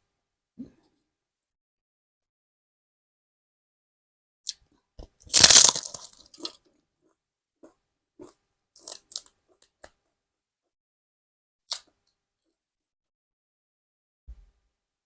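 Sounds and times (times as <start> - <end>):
crunchy chewing of crisp food: 5.3 - 6.7.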